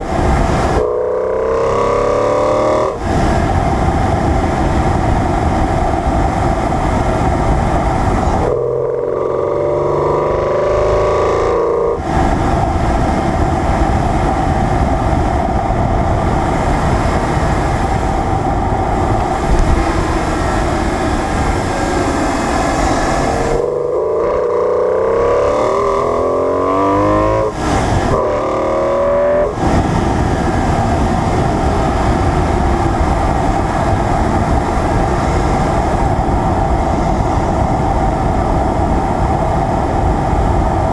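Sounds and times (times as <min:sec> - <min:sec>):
heavy wind noise: 0:00.0 - 0:40.9
road noise: 0:00.0 - 0:40.9
car engine through intake: 0:11.8 - 0:40.9.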